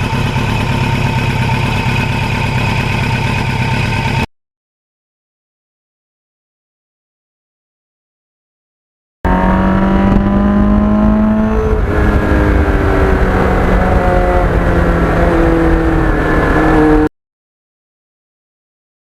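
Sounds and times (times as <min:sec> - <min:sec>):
motorcycle engine running: 0:00.0 - 0:04.3, 0:09.3 - 0:17.1
wind and road noise: 0:09.3 - 0:17.1.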